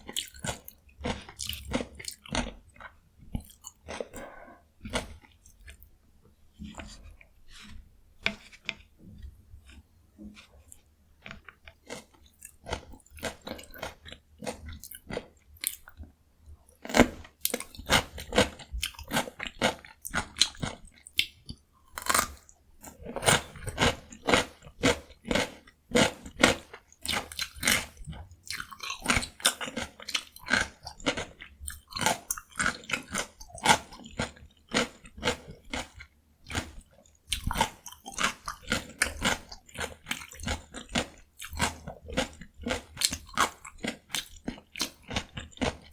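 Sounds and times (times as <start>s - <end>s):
cucumber crunching being chewed: 0.0s - 5.9s, 6.5s - 16.1s, 16.7s - 45.9s.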